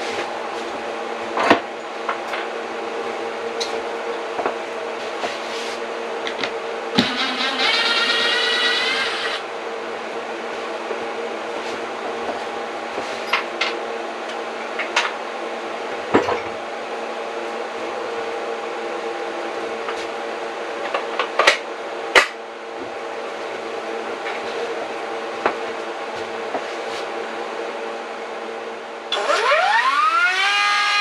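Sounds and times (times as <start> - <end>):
steady hum: 0.0 - 21.0
power tool whining: 7.0 - 9.4, 29.1 - 31.0.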